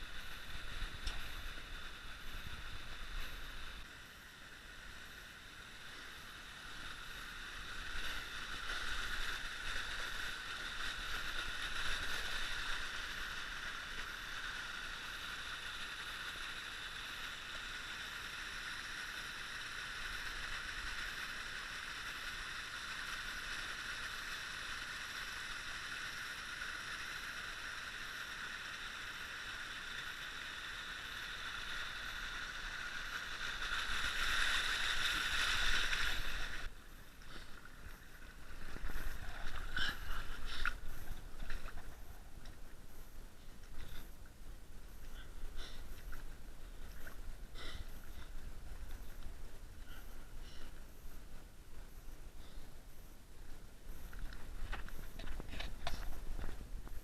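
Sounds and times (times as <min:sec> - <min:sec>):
creek water rushing over rocks: 0:04.7 - 0:36.7.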